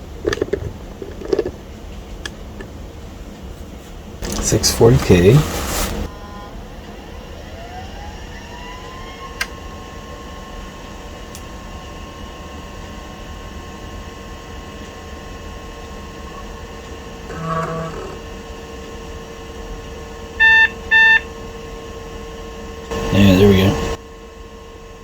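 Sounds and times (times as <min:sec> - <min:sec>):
drive motor whine: 0:04.2 - 0:05.4, 0:06.0 - 0:24.0.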